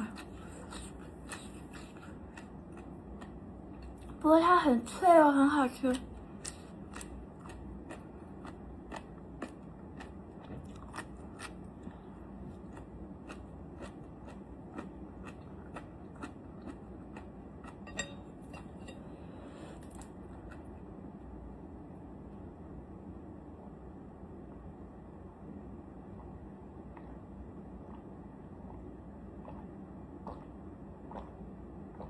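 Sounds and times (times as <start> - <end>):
crisp chewing crunches: 6.4 - 17.3.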